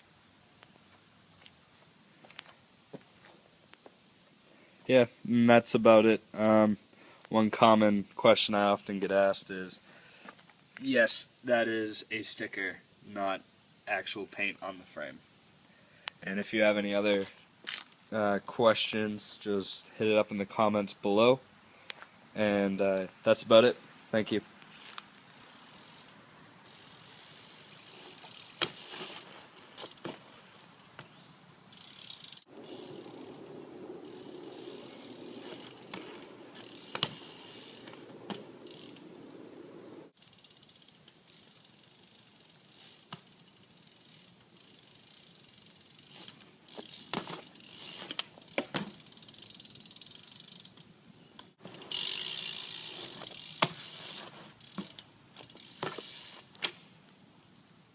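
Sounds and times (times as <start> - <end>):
bike hub ticking: 31.7 - 56.6
bike knocks: 35.4 - 38.5, 46.8 - 49.0, 53.5 - 56.8.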